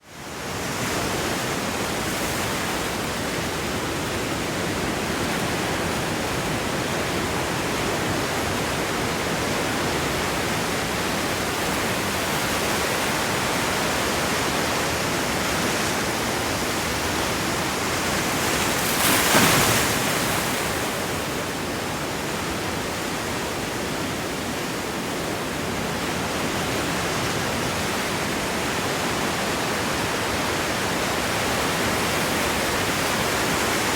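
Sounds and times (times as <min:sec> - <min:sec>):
sea waves on rocky shore: 0:00.4 - 0:33.9
wave crash: 0:18.6 - 0:20.7.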